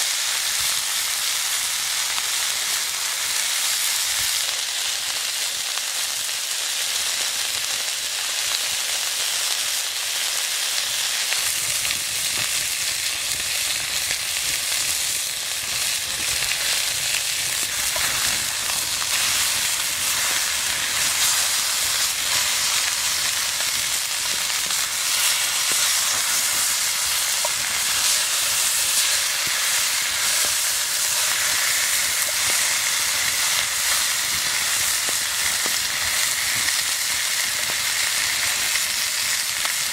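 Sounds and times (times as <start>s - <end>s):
meat sizzling: 0.0s - 39.9s
small crackles: 11.4s - 39.9s.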